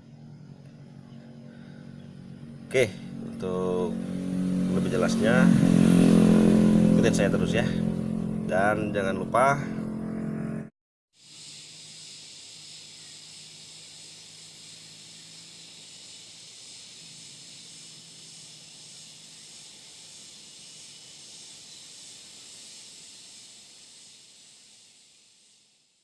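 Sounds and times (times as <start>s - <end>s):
steady high hiss: 11.2s - 26.0s.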